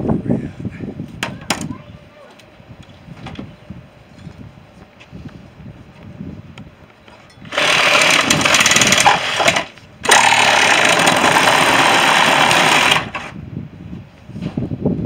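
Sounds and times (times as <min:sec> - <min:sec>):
power tool running: 0:07.4 - 0:13.4.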